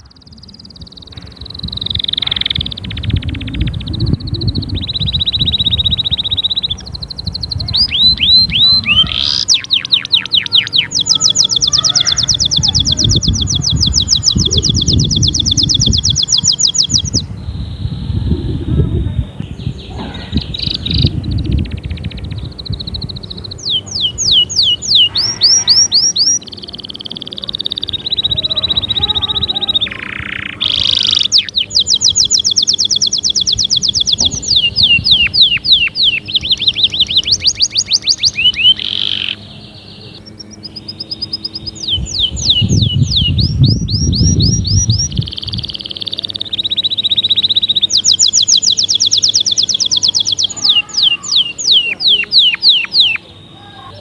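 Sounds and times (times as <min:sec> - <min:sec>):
low rumbling noise: 0:00.0 - 0:48.0
canary singing: 0:00.0 - 0:54.0.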